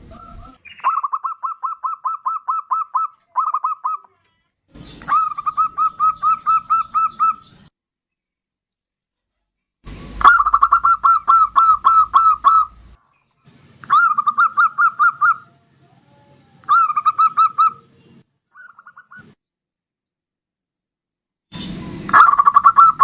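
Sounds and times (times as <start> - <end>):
dove cooing: 0.0 - 4.2, 4.8 - 7.7, 10.2 - 12.8, 13.8 - 17.8, 22.1 - 23.0.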